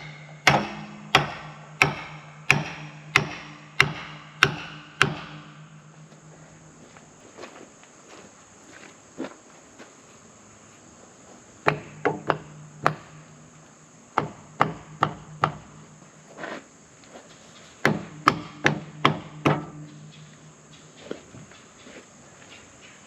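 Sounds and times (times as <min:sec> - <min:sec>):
hammer blows: 0:00.0 - 0:06.2
low ringing hum: 0:00.0 - 0:08.7, 0:10.3 - 0:23.0.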